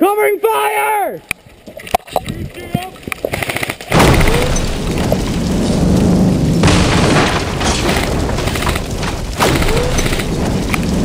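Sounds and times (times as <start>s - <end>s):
sharp cracks: 1.3s - 11.0s
loud continuous rumbling: 3.9s - 11.0s.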